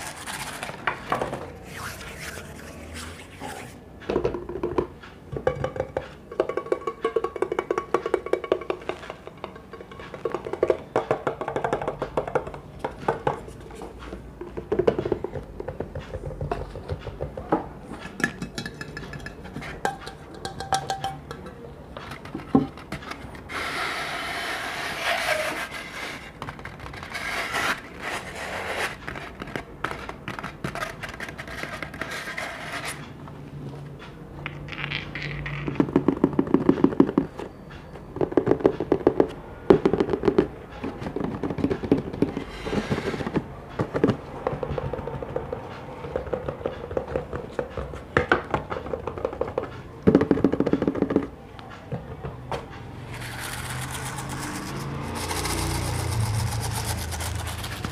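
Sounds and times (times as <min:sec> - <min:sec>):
hands tapping on hard objects: 0:04.1 - 0:13.4, 0:14.4 - 0:23.4
rough scraping: 0:23.5 - 0:29.1, 0:53.1 - 0:57.9.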